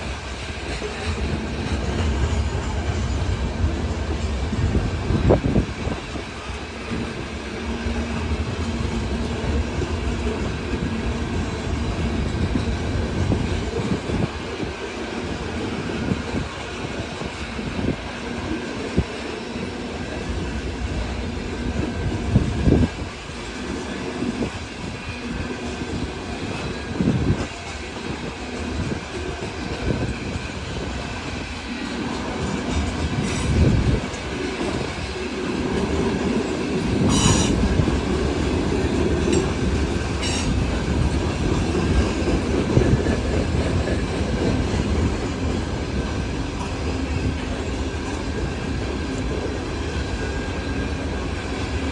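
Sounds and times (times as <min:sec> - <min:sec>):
train wheel squeals: 0:00.0 - 0:05.4, 0:22.6 - 0:51.9
freight train wheels clattering: 0:00.0 - 0:51.9.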